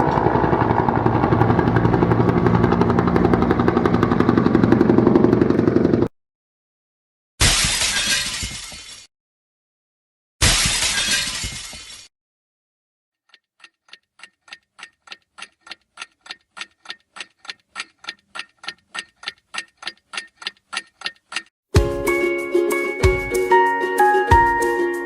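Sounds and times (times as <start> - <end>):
glass shattering: 7.4 - 9.1, 10.4 - 12.1
clock ticking: 13.2 - 21.5.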